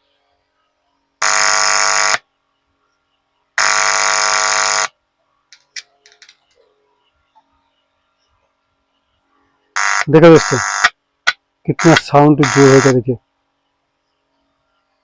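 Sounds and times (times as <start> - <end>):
loudspeaker buzzing tone: 1.2 - 2.2, 3.6 - 4.9, 9.8 - 10.9, 11.8 - 13.1.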